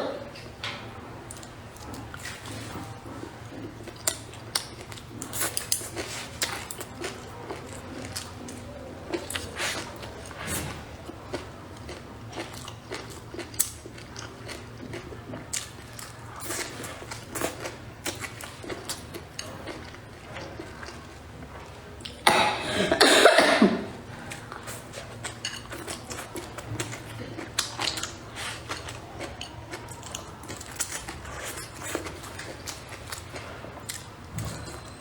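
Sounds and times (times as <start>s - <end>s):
person chewing: 1.3s - 23.1s, 24.0s - 35.0s
person coughing: 22.2s - 24.0s.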